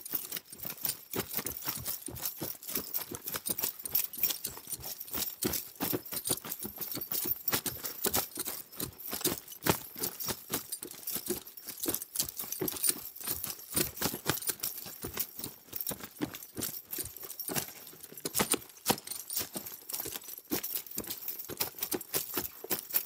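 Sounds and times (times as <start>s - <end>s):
bridle metal jingling and clinking: 0.0s - 23.0s.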